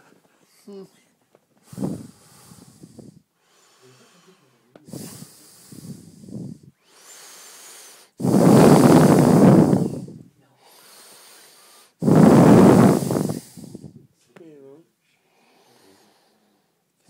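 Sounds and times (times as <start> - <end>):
man snoring: 8.2 - 10.2, 12.0 - 14.0.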